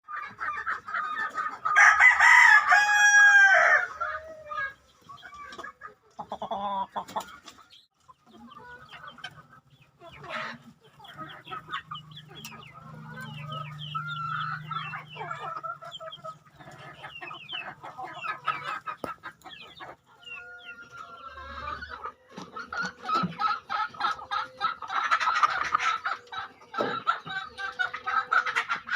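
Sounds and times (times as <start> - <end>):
chickens clucking and calling: 0.0 - 28.9.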